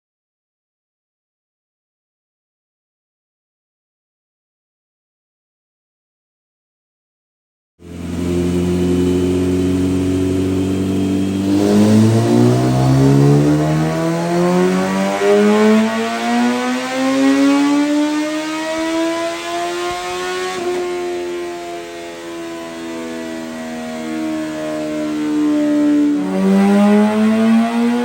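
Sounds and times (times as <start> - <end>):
motorcycle engine revving: 7.8 - 28.0.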